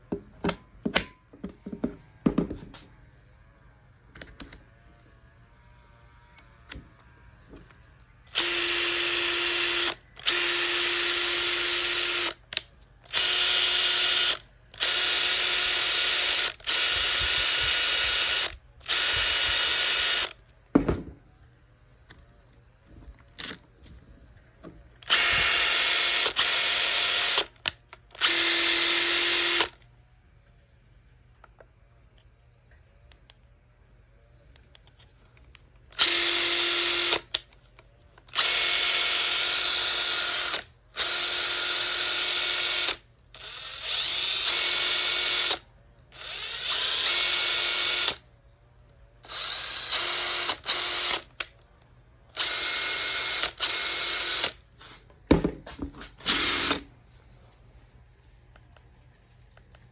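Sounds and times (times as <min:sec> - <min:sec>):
impact driver running: 0:08.3 - 0:12.4, 0:13.1 - 0:21.2, 0:25.0 - 0:29.7, 0:36.0 - 0:37.2, 0:38.3 - 0:45.6, 0:46.2 - 0:48.2, 0:49.3 - 0:51.5, 0:52.4 - 0:54.6, 0:55.3 - 0:56.8.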